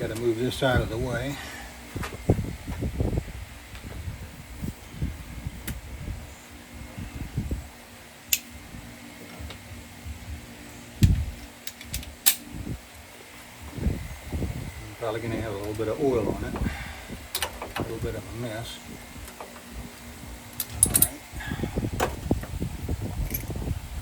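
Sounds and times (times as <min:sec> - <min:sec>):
faint steady hum: 0:00.0 - 0:24.0
wrench and metal parts clicking: 0:11.6 - 0:12.4, 0:20.6 - 0:21.2.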